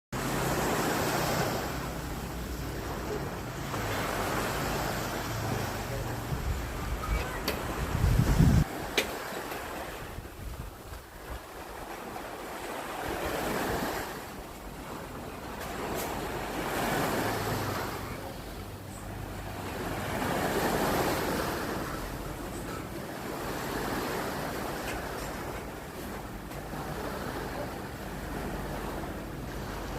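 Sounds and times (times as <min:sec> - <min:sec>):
sea waves washing on shore: 0:00.2 - 0:29.9
wind rumble on microphone: 0:01.0 - 0:15.8.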